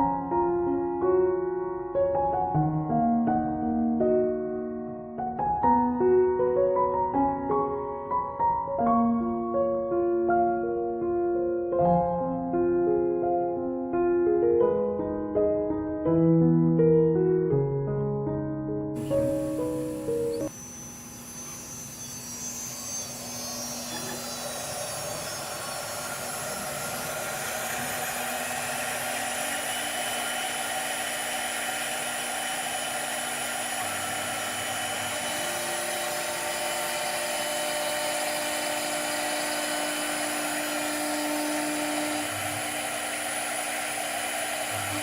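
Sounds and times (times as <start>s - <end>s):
wood-turning lathe motor whine: 19.0s - 45.0s.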